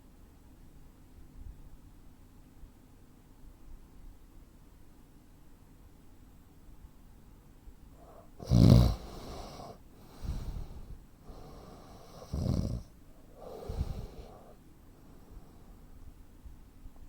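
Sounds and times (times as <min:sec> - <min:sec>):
loud snort: 0:08.0 - 0:14.6
man snoring heavily: 0:08.0 - 0:14.6.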